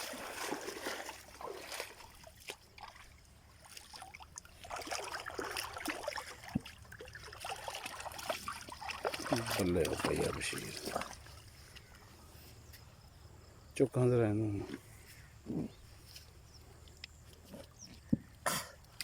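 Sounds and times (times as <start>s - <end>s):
river water trickling and lapping: 0.0s - 19.0s.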